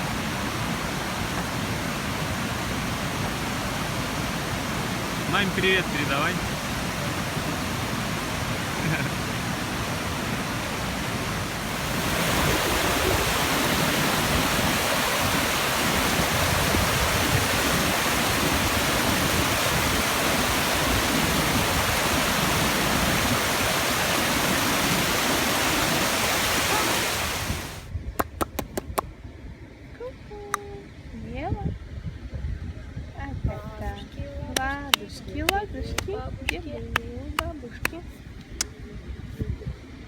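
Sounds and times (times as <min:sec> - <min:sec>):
waterfall rushing: 0:00.0 - 0:27.9.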